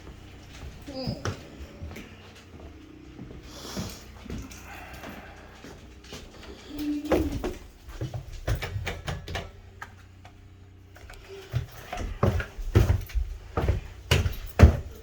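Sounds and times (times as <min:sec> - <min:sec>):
handling knocks and clicks: 0:05.9 - 0:15.0.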